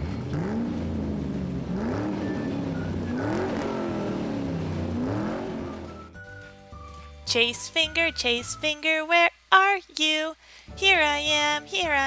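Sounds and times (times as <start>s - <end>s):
car engine revving: 0.0s - 6.2s
faint music: 0.0s - 12.0s.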